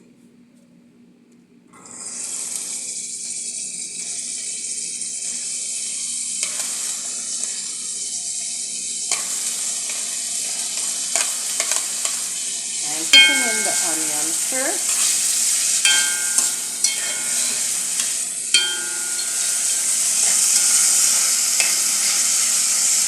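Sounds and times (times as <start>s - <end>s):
onion sizzling in hot oil: 1.8s - 23.0s
utensil clicking against pan: 9.1s - 23.0s.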